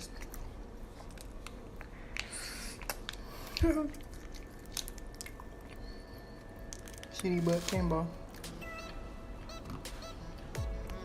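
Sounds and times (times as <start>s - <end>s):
clicks and rustles of eating: 0.0s - 8.6s.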